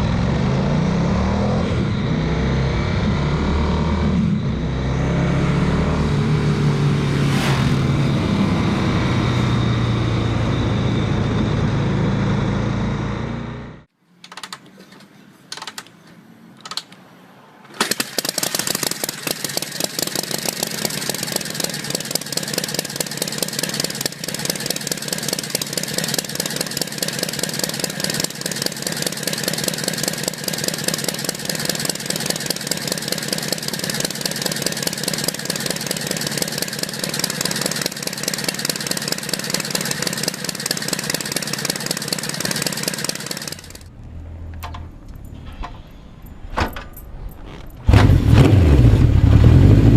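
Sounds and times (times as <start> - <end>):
motorcycle engine idling: 18.2 - 45.3.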